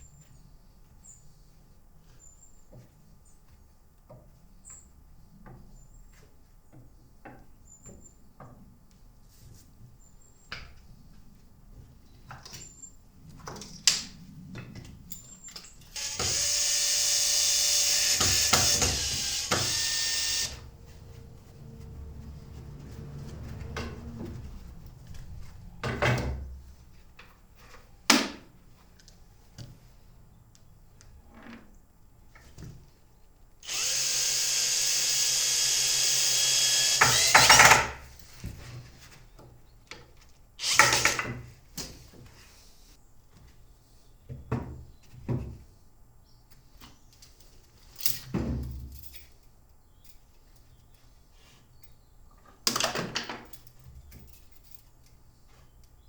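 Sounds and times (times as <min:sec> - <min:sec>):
power drill running: 0:15.9 - 0:20.7, 0:33.6 - 0:38.0, 0:40.6 - 0:41.2.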